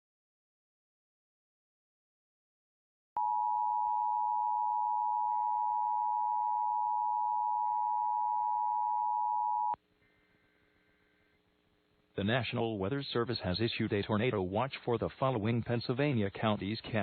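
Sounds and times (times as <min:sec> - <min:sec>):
two-tone alert signal: 0:03.2 - 0:09.8.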